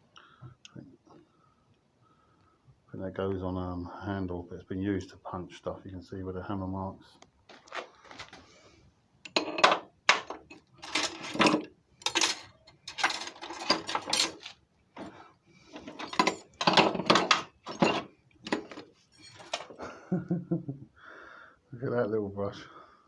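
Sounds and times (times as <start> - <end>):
metal parts clinking in a box: 9.3 - 15.1, 15.7 - 19.8.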